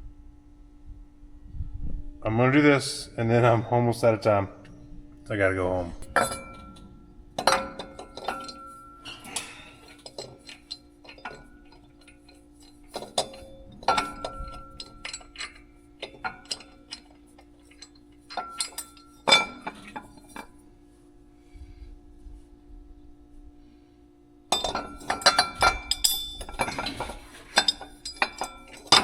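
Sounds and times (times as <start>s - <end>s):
metal tools clinking and knocking: 6.0s - 20.6s, 24.5s - 29.0s.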